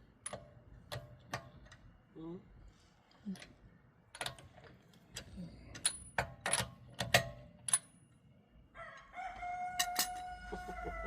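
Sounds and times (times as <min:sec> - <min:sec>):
rooster crowing: 0:08.7 - 0:11.0.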